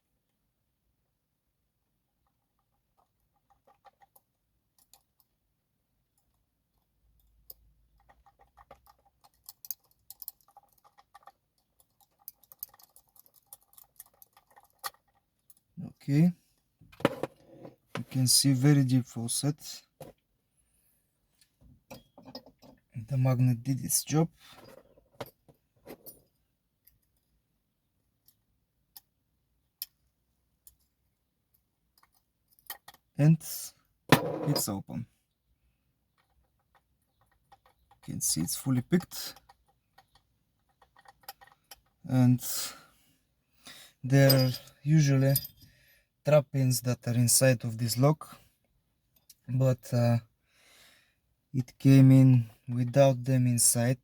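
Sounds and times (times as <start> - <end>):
lock pick metallic clicks: 7.2 - 15.6.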